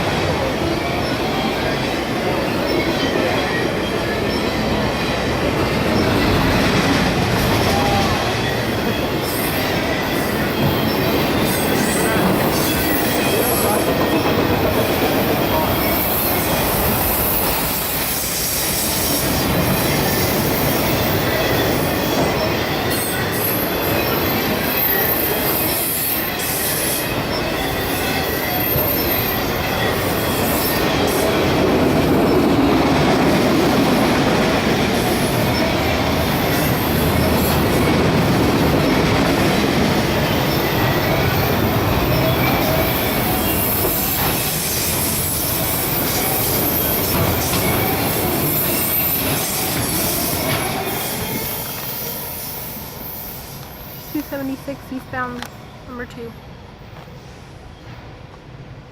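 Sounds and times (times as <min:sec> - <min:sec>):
train wheels rumbling on rail: 0:00.0 - 0:58.9
high-pitched wheel squeals: 0:40.3 - 0:54.3.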